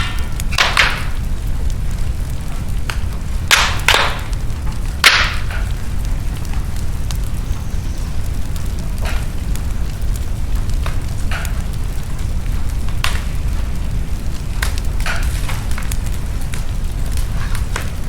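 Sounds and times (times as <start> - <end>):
fire crackling in fireplace: 0.0 - 18.0
sharp pops of fire: 0.0 - 18.0
low rumble: 4.3 - 18.0.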